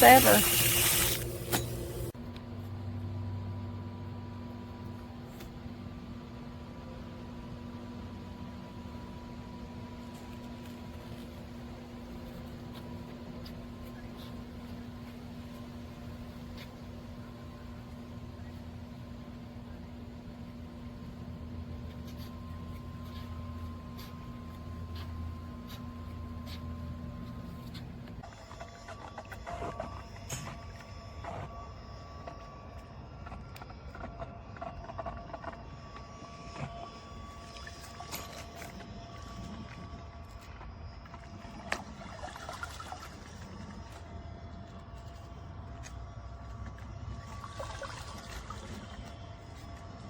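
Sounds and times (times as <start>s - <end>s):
small electric motor humming: 0.0s - 2.2s, 7.8s - 42.2s.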